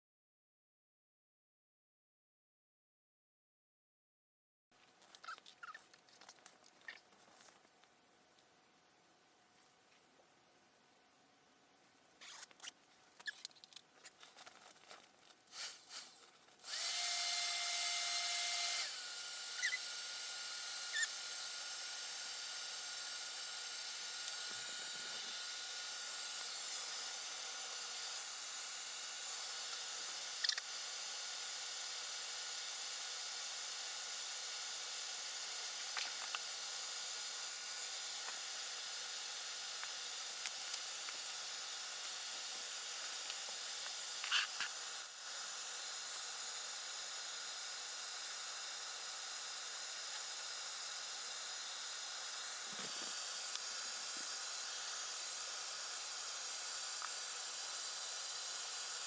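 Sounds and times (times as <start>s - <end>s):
hair dryer running: 16.7s - 19.2s, 51.2s - 59.0s.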